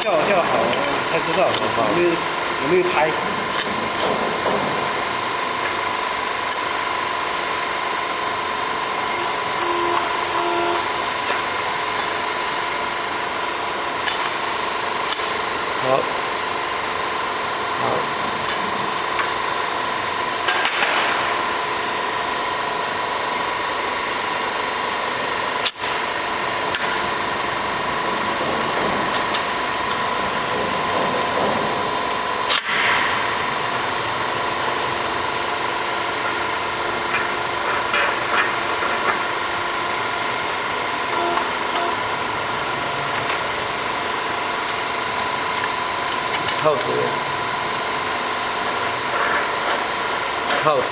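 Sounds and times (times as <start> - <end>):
machine motor humming: 0.0 - 15.8, 27.3 - 46.3.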